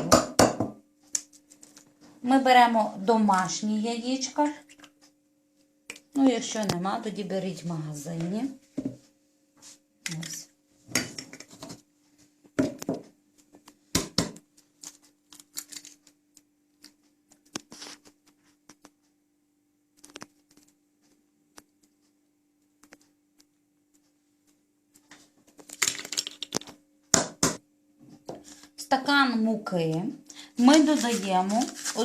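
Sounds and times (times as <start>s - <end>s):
eggs cracked against a bowl: 13.6s - 16.0s, 25.6s - 27.6s.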